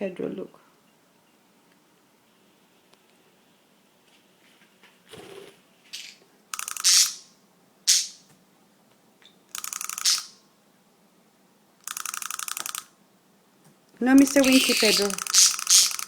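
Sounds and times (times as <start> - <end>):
wind-up toy clockwork clicking: 6.0 - 7.3, 9.5 - 10.4, 11.8 - 12.9, 14.2 - 16.0
budgie chirps: 6.0 - 8.2, 9.5 - 10.4, 14.2 - 16.0.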